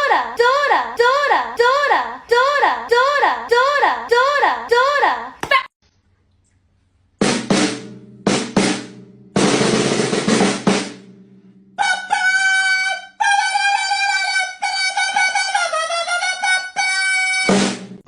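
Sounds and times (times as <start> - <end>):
quick drum hits: 7.2 - 11.2
drum roll: 7.2 - 11.3.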